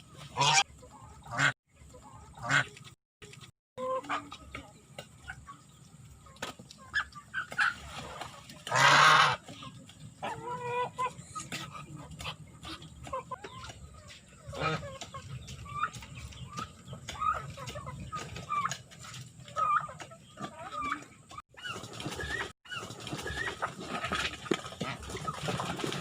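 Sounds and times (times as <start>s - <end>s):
chickens clucking: 0.0s - 26.0s
loud chicken squawk: 8.7s - 9.4s.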